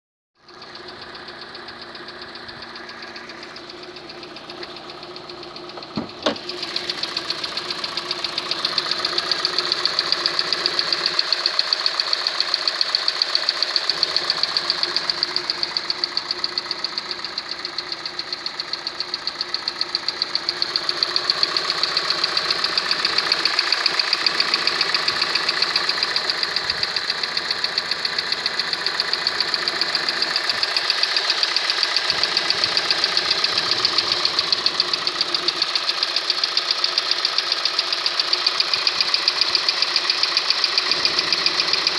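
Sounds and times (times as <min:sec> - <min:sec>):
engine knocking: 0:00.4 - 0:41.9
single thump: 0:05.8 - 0:06.5.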